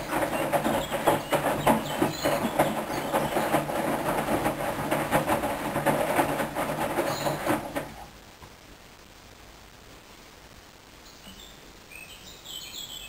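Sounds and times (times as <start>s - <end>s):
washing machine drum humming: 0.0s - 8.1s
irregular knocks of laundry: 0.0s - 8.2s.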